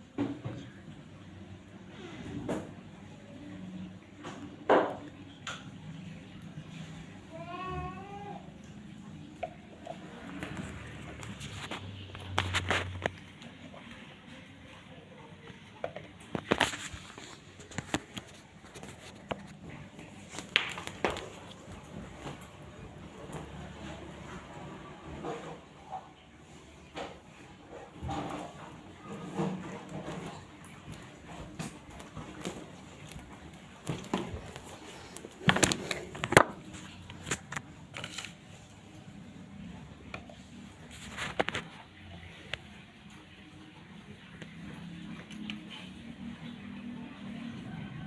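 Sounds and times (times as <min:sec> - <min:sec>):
handling rustles and clicks: 0:09.4 - 0:14.0, 0:15.5 - 0:22.5, 0:28.1 - 0:39.0.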